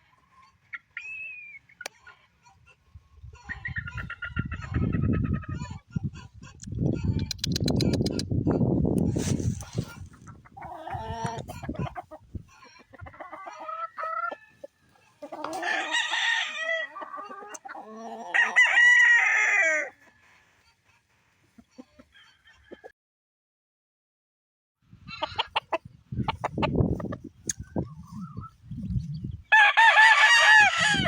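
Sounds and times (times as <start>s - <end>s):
roosters crowing: 13.2s - 20.5s, 29.4s - 31.0s.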